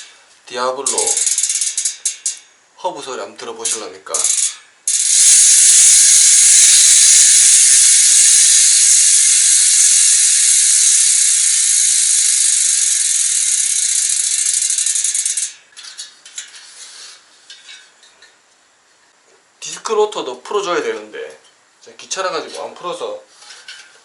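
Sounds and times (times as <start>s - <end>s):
bicycle freehub ratchet buzzing: 0.9s - 2.5s, 4.1s - 15.7s
light ratchet clicks: 0.9s - 2.5s, 3.7s - 15.6s.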